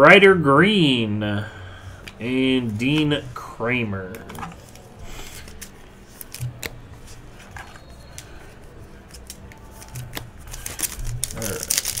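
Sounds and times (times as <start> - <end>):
trading cards rustling and clicking: 4.1 - 12.0.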